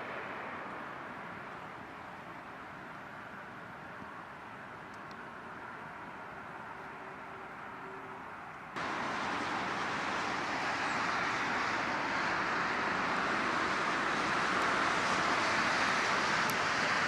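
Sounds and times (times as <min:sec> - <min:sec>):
train approaching: 0:08.8 - 0:17.0.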